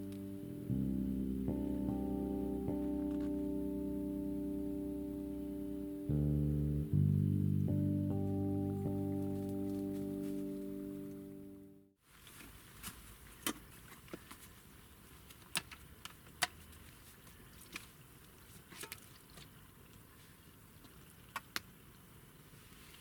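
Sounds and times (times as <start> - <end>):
background music: 0.0 - 11.8
faint steady hiss: 0.0 - 23.0.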